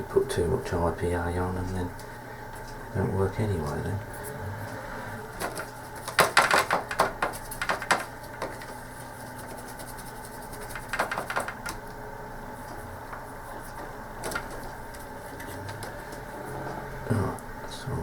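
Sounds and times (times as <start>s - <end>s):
steady low hum: 0.0s - 18.0s
cotton swab scratching plastic: 5.4s - 11.6s.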